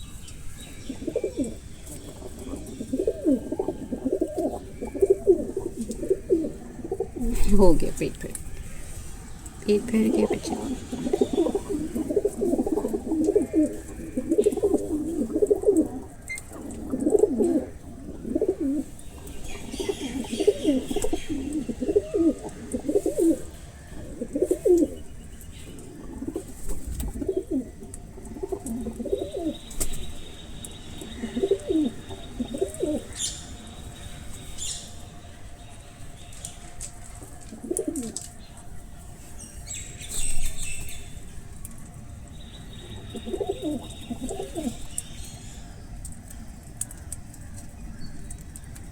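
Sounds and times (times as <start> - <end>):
birds short low calls: 28.4 - 34.8, 42.6 - 45.0.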